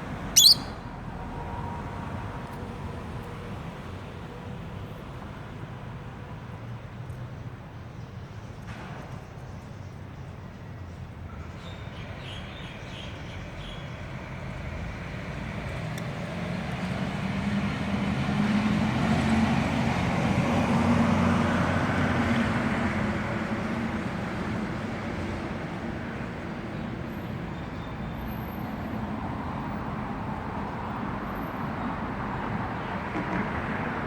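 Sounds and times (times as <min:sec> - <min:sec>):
road vehicle passing: 0:00.0 - 0:06.1, 0:13.5 - 0:34.0.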